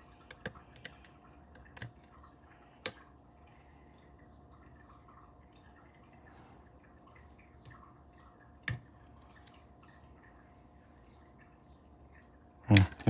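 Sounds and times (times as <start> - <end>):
metallic clicks of lock picking: 0.3 - 2.1, 12.8 - 13.0.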